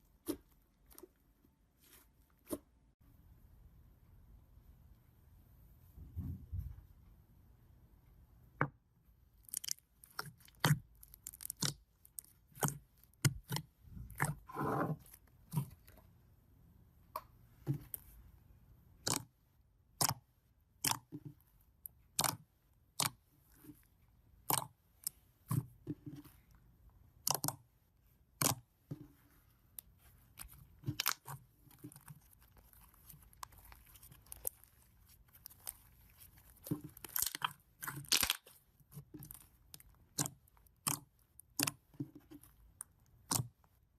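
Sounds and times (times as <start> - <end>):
slime crackling and popping: 9.4 - 14.3, 30.8 - 41.8.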